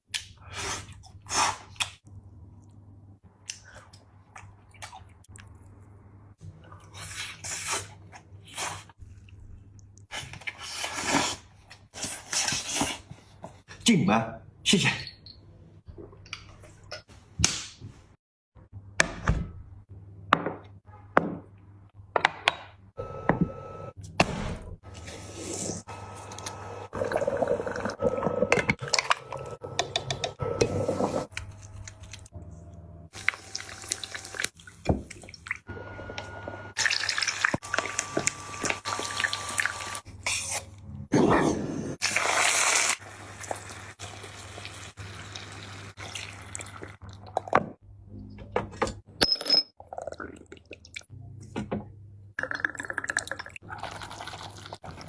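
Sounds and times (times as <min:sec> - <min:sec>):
wet chewing and slurping: 0:25.0 - 0:32.3.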